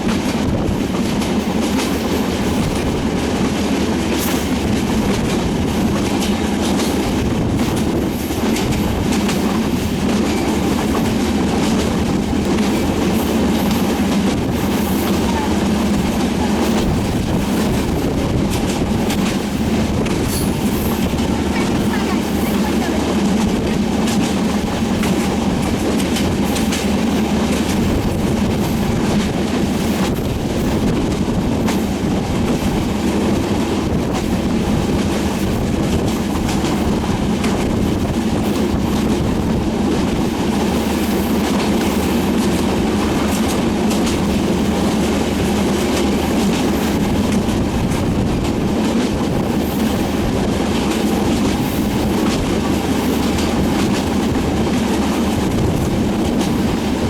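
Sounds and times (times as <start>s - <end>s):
train rumbling over bridge: 0.0s - 57.0s
wheels clickety-clack on rail joints: 0.0s - 57.0s.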